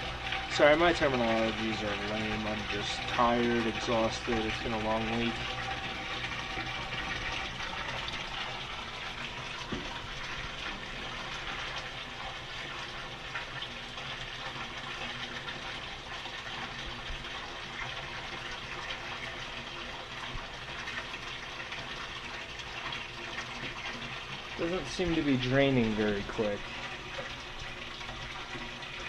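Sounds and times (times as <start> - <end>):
water splashing into tank: 0.0 - 29.0.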